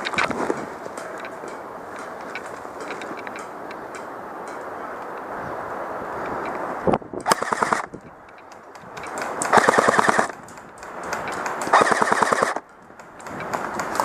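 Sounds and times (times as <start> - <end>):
airsoft gun full-auto bursts: 7.3 - 7.9, 9.4 - 10.3, 11.7 - 12.6.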